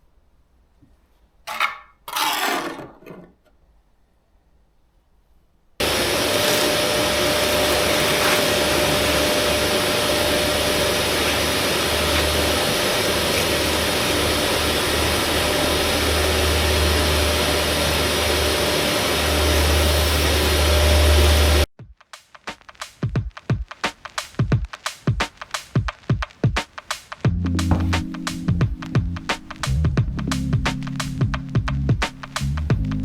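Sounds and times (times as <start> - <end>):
electric machine whining: 5.8 - 21.7.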